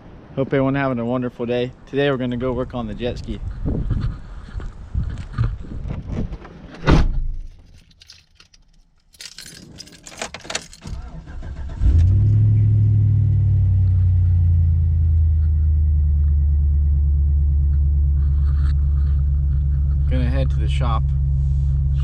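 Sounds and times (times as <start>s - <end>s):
thump: 6.1s - 7.4s
keys jingling: 7.5s - 11.3s
vehicle engine starting and idling: 9.7s - 22.0s.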